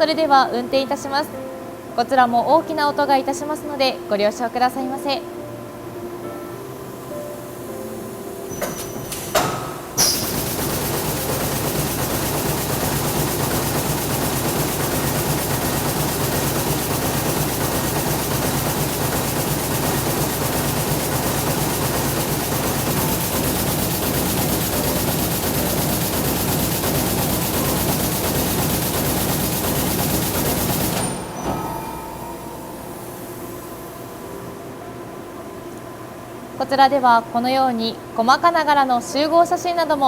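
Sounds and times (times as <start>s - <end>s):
loom mechanical clatter: 8.5s - 32.5s.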